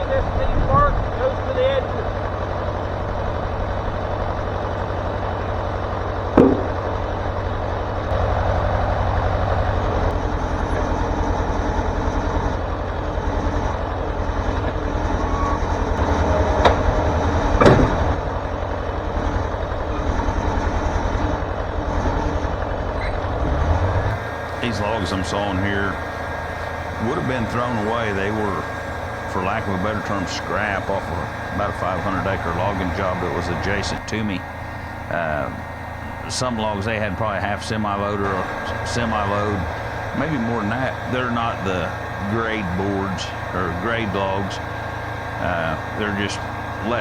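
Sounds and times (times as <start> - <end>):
sawmill engine droning: 0.0 - 47.0
sharp metallic knocks: 6.4 - 7.2.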